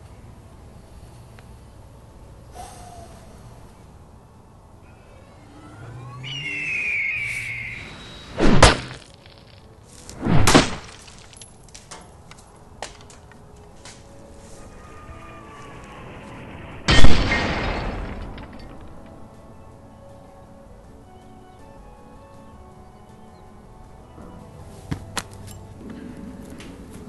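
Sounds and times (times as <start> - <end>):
falling whine: 2.4 - 10.4.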